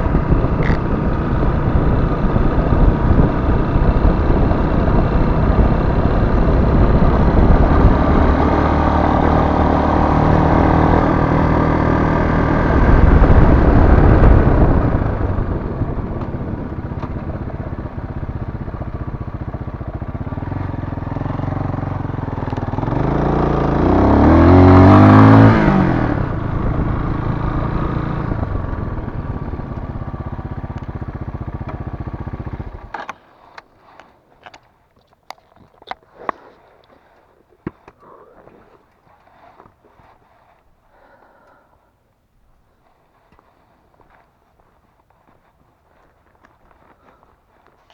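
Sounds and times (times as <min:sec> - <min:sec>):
motorcycle engine running: 0:00.0 - 0:33.2.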